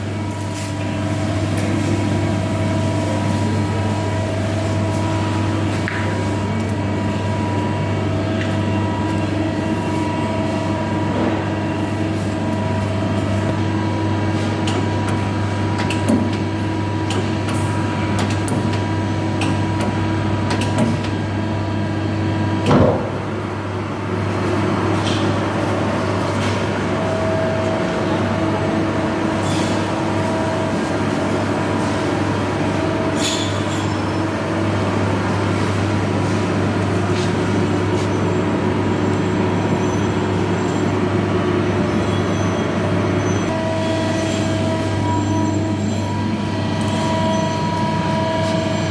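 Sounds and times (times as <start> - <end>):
lathe machine hum: 0.0 - 48.9.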